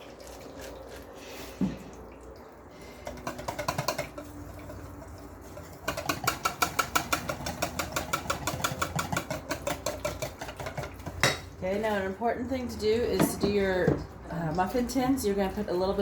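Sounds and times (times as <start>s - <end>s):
metal utensil scraping pot: 3.0s - 11.8s.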